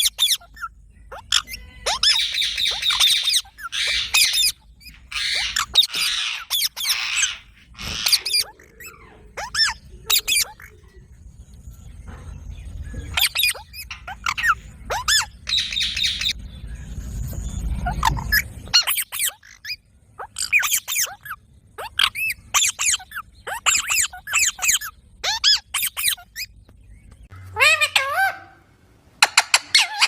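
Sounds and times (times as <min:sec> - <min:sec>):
parrot squawking: 0:00.0 - 0:11.0, 0:13.0 - 0:16.4, 0:17.9 - 0:26.5, 0:27.4 - 0:30.0
low rumble: 0:00.4 - 0:18.9.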